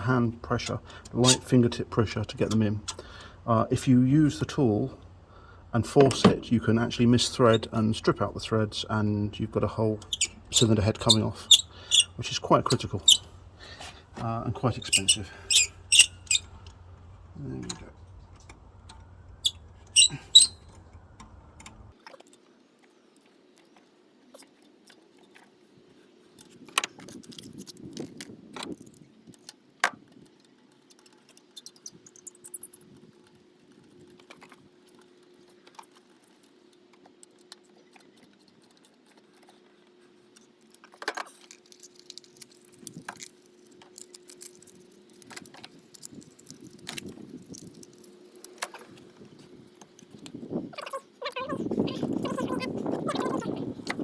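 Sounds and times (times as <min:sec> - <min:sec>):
faint steady hum: 0:00.0 - 0:21.9
tools and engine parts rattling: 0:10.0 - 0:21.9, 0:31.1 - 0:34.2, 0:40.9 - 0:50.3.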